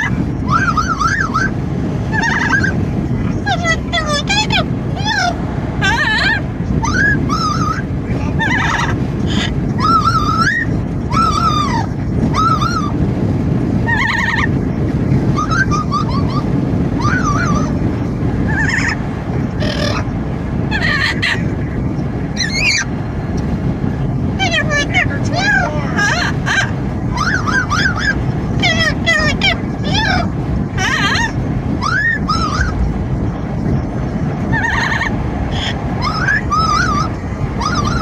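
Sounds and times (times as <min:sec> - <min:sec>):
car wind and road noise: 0:00.0 - 0:38.0
parrot whistling and squawking: 0:00.4 - 0:02.8, 0:03.4 - 0:13.0, 0:13.8 - 0:14.5, 0:15.3 - 0:17.8, 0:18.5 - 0:19.0, 0:19.6 - 0:20.1, 0:20.7 - 0:21.5, 0:22.4 - 0:22.9, 0:24.4 - 0:32.8, 0:34.5 - 0:38.0.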